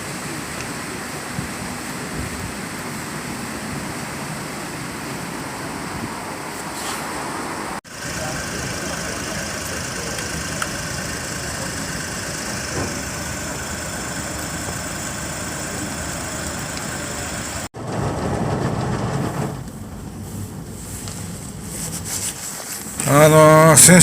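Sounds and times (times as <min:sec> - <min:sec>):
rough loud noise: 0:00.0 - 0:24.0
car engine idling: 0:07.8 - 0:24.0.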